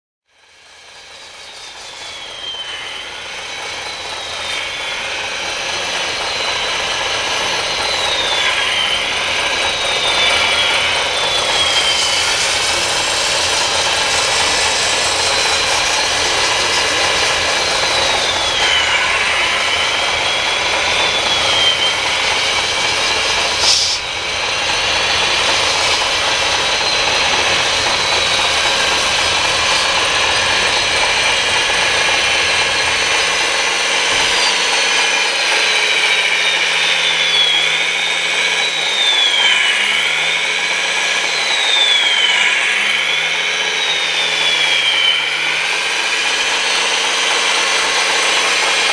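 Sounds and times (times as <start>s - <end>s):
electric motors whining: 0.4s - 48.9s
sharp click: 23.6s - 24.0s.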